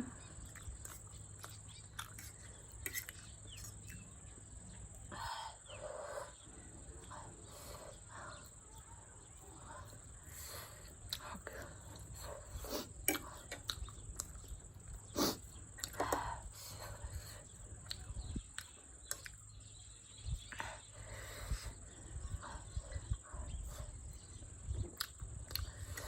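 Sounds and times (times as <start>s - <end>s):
person chewing: 0.0s - 5.0s, 9.9s - 19.8s, 24.7s - 26.0s.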